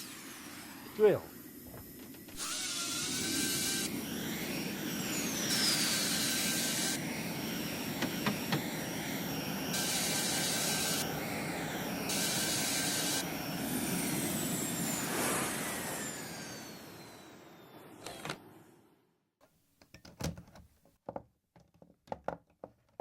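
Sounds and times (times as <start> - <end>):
electric drill drilling into wall: 0.0 - 18.8.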